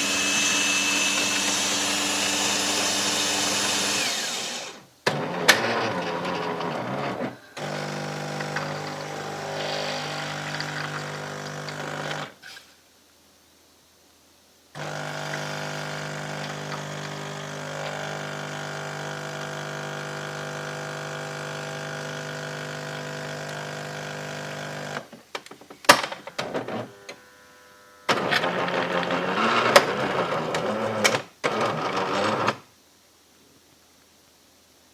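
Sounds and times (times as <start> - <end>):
coffee machine hissing: 0.0 - 12.4, 14.8 - 25.1, 26.4 - 32.6
coffee machine pump humming: 0.0 - 12.4, 14.8 - 25.1.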